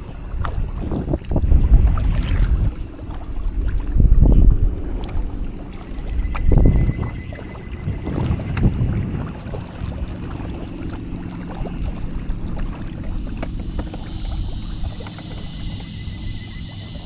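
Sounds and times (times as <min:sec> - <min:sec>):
water lapping and splashing: 0:00.0 - 0:17.0
wind buffeting microphone: 0:00.0 - 0:17.0
small knocks and drips: 0:07.5 - 0:16.0.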